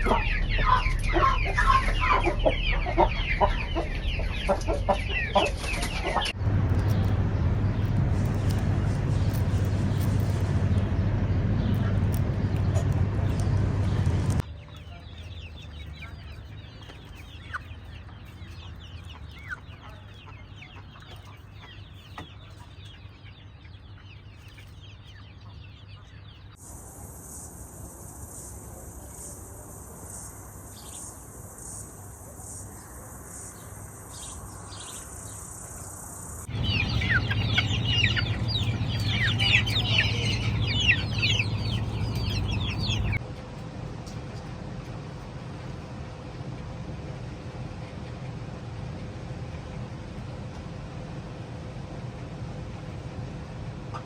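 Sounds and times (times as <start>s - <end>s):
chickens chirping and clucking: 0.0s - 54.0s
high pulsing hiss: 26.6s - 43.2s.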